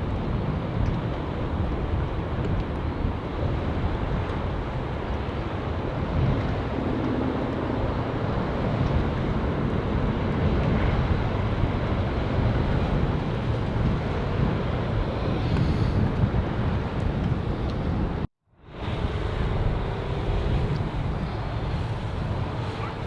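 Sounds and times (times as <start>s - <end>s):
wind buffeting microphone: 0.0s - 23.0s
faint engine hum: 18.6s - 23.0s.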